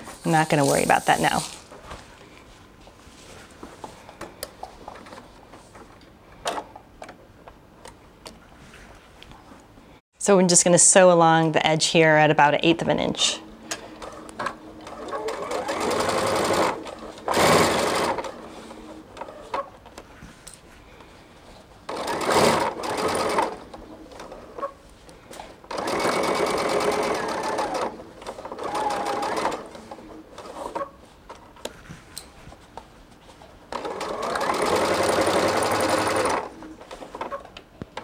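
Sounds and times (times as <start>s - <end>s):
sewing machine stitching: 14.0s - 18.5s, 21.9s - 24.8s, 25.7s - 30.9s, 33.7s - 37.4s.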